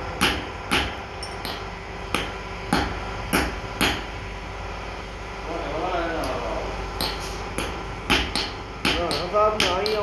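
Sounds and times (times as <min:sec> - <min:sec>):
hammer striking metal: 0:00.2 - 0:04.2, 0:07.0 - 0:10.0.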